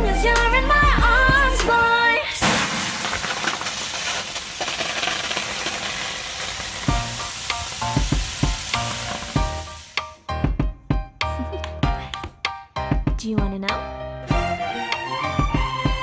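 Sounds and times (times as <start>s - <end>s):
wood fire crackling: 2.4s - 10.2s
music with plucked notes and bass: 10.3s - 16.0s.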